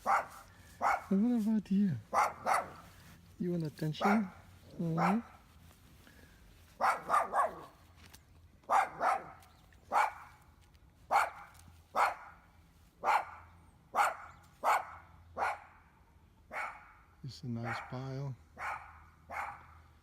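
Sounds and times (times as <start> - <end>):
dog barking: 0.0 - 1.2, 2.1 - 2.9, 4.0 - 5.4, 6.8 - 7.8, 8.7 - 10.3, 11.1 - 12.4, 13.0 - 15.8, 16.5 - 17.0, 17.6 - 19.8.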